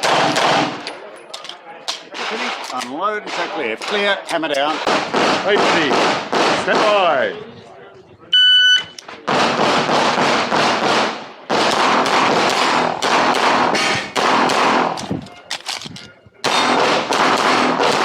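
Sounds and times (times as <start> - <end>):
pistol firing rapid shots: 0.0 - 0.8, 4.8 - 7.0, 9.3 - 15.1, 16.4 - 18.0.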